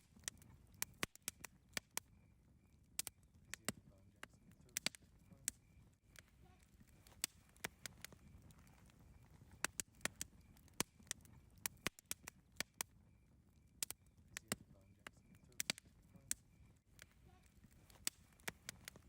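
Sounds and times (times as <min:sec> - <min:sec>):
campfire crackling and popping: 0:00.0 - 0:19.0
faint high chirp: 0:03.9 - 0:12.0, 0:12.9 - 0:19.0.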